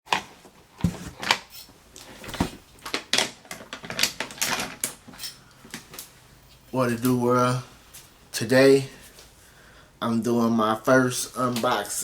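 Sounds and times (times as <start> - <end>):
rustling: 2.0 - 3.0.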